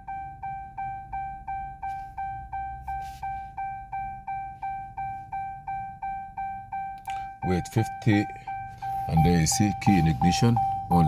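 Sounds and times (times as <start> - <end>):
dashboard warning chime beeping: 0.0 - 11.0.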